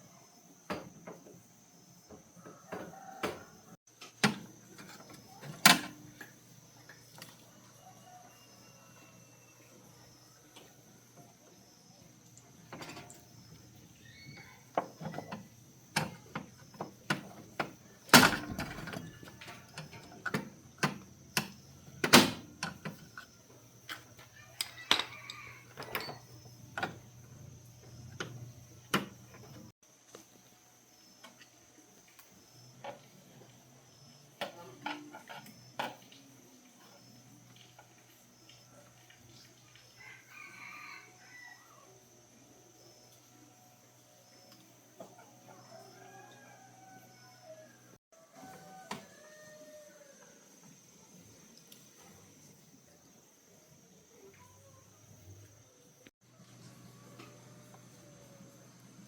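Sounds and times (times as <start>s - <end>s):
knocks and clinks of hard objects: 23.9s - 27.0s.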